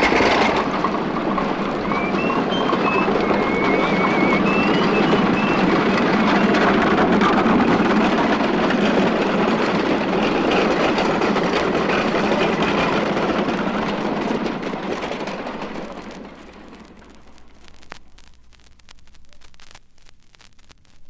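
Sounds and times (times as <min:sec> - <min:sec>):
dense background din: 0:00.4 - 0:08.5.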